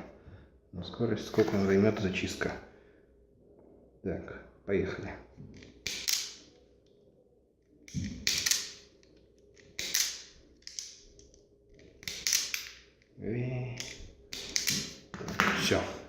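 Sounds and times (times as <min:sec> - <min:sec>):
wire stripper snapping and clicking: 0:05.6 - 0:06.4, 0:07.9 - 0:08.8, 0:09.5 - 0:11.0, 0:11.9 - 0:12.8, 0:13.8 - 0:15.0.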